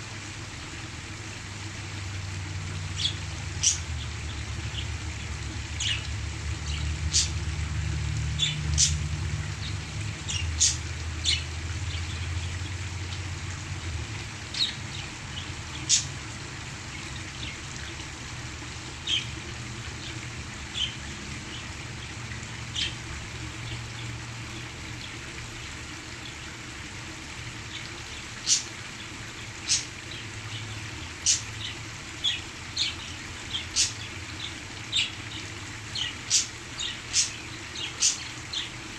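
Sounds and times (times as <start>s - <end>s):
parakeets chirping: 3.0s - 4.9s, 5.8s - 6.1s, 6.7s - 7.4s, 8.3s - 12.8s, 14.5s - 16.2s, 20.0s - 21.6s, 31.2s - 35.1s, 35.9s - 38.7s.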